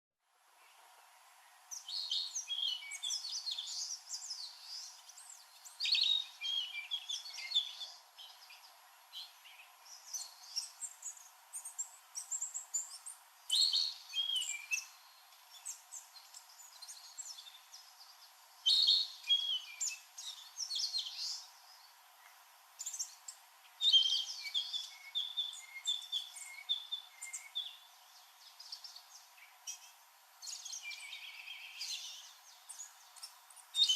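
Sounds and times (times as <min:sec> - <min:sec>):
bird singing flute-like whistles: 0:13.5 - 0:14.9, 0:23.8 - 0:27.8.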